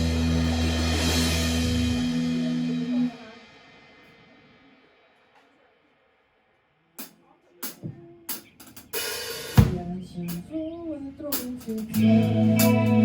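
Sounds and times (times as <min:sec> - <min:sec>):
sliding bass or guitar notes: 0:00.0 - 0:03.1, 0:11.9 - 0:13.0
rock band playing chord: 0:00.0 - 0:03.4, 0:11.8 - 0:13.0
cymbal crash: 0:00.0 - 0:04.1
drum hits: 0:07.0 - 0:10.0.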